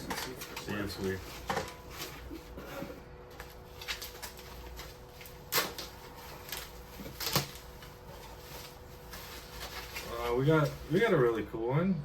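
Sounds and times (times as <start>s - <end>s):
cardboard boxes clicking and rustling: 0.0s - 10.8s.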